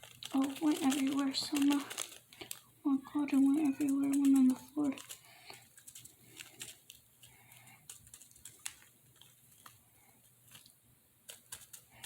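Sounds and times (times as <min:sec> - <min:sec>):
low room hum: 0:00.0 - 0:12.0.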